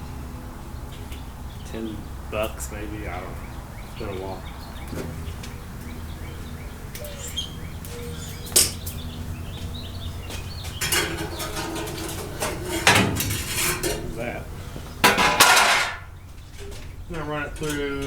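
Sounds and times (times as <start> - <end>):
wire spool rattling: 10.7 - 16.9.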